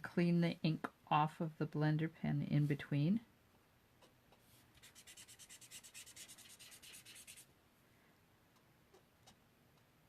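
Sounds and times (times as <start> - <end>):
pen scrubbing on paper: 4.8 - 7.5.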